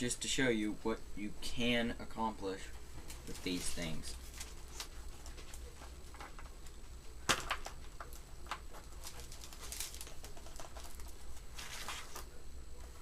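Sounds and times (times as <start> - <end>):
objects clicking and rustling: 7.3 - 12.3.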